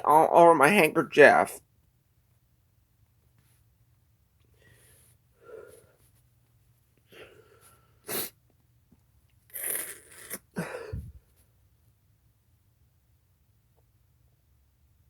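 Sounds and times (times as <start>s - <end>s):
person sneezing: 8.1s - 8.4s, 9.6s - 11.2s.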